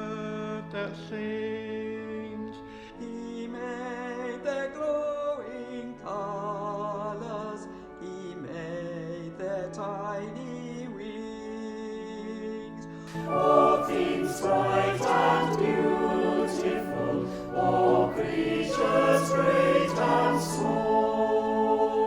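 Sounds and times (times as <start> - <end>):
accompaniment chords: 13.1 - 22.0
voices singing a hymn: 13.1 - 22.0.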